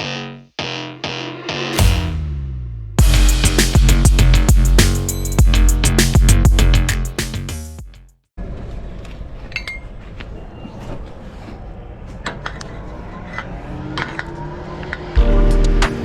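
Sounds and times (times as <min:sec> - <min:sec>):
music: 0:00.0 - 0:08.3, 0:15.2 - 0:16.0.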